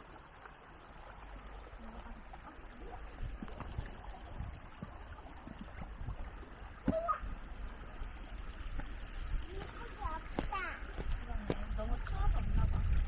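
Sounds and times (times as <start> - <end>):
stream water running: 0.0 - 13.0.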